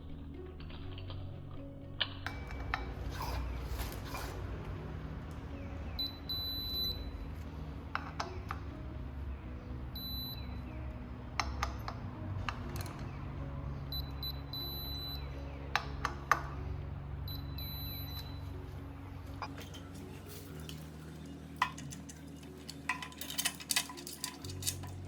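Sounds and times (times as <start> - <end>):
background music: 0.0 - 25.0
high electronic beeps: 6.0 - 7.1, 10.0 - 10.6, 13.9 - 15.3, 17.3 - 18.5.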